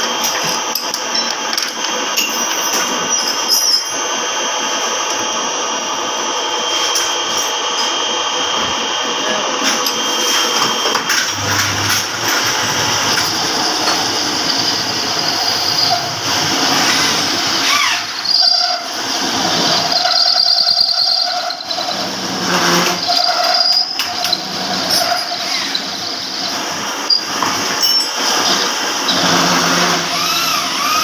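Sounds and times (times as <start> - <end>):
power tool whining on metal: 0.0 - 31.0
metal-on-metal squeals: 11.3 - 31.0.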